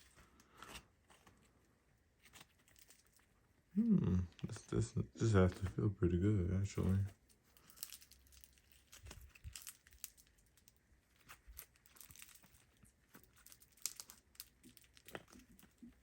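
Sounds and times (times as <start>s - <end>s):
slime crackling and clicking: 7.8s - 15.8s.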